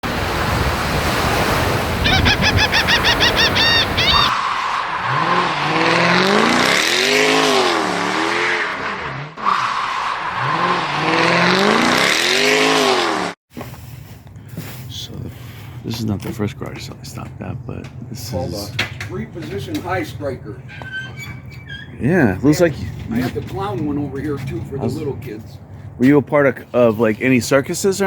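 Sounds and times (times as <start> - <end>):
vehicle engine revving: 3.2 - 13.4.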